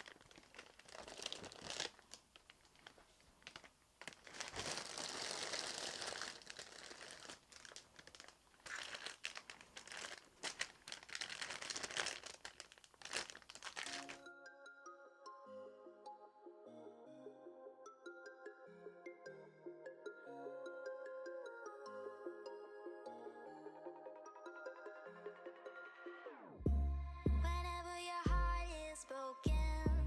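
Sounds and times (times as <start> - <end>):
plastic bags crinkling: 0.0 - 14.2
electronic background music: 13.9 - 30.0.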